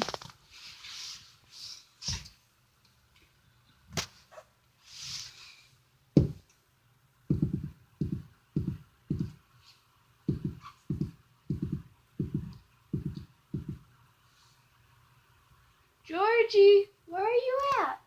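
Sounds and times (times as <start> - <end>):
footsteps on floor: 6.2 - 6.5, 7.3 - 9.4, 10.3 - 13.9.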